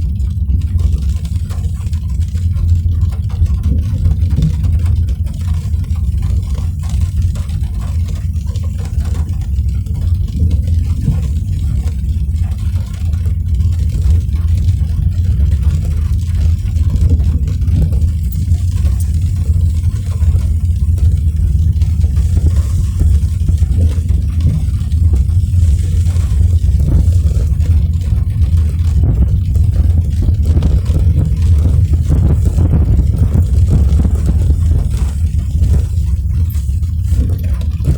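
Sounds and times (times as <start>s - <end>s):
car engine and road rumble: 0.0s - 37.9s.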